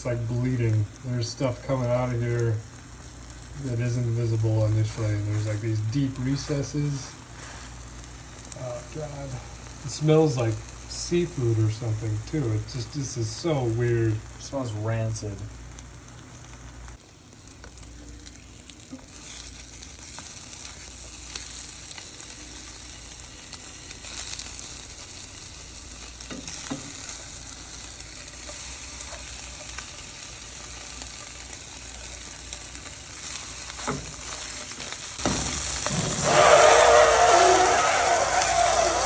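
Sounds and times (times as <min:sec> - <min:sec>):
meat sizzling in a pan: 0:00.0 - 0:39.0
loud wavering noise: 0:35.4 - 0:39.0.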